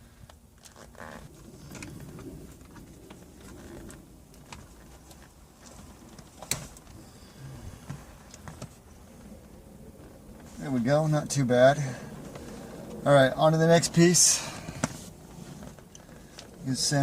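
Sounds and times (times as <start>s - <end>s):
tape rustling and crackling: 0.0s - 7.0s, 14.5s - 16.7s.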